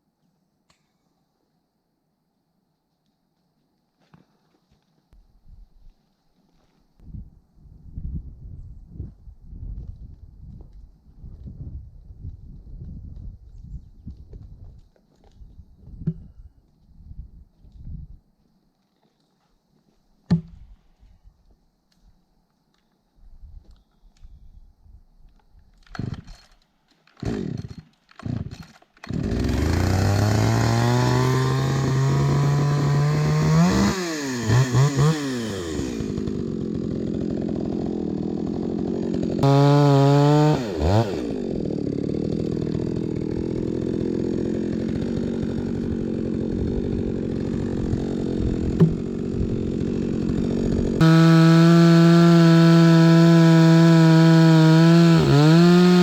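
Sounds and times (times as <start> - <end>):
chainsaw pull-start: 25.8 - 56.0
chainsaw idling and revving: 27.2 - 56.0.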